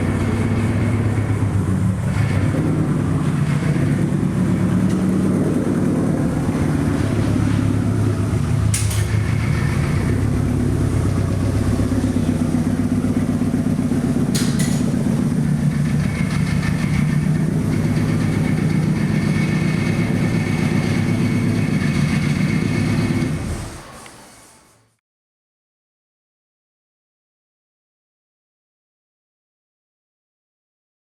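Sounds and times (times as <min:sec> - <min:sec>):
car engine running at low revs: 0:00.0 - 0:23.8.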